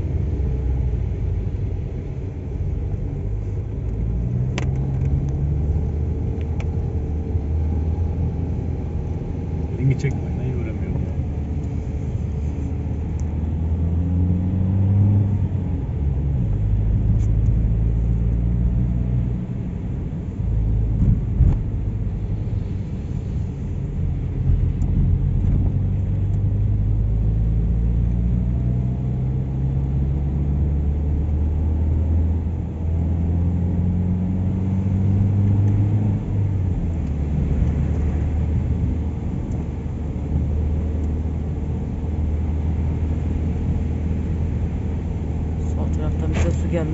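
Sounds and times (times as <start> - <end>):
car engine accelerating: 0.0 - 46.9
road rumble inside car: 0.0 - 46.9.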